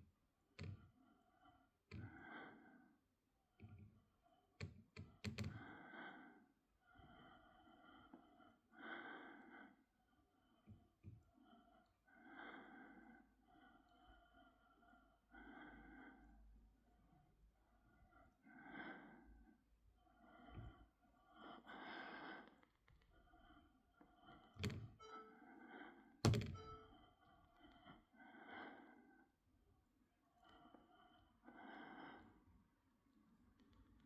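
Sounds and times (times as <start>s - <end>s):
sharp thunks: 26.3s - 26.8s.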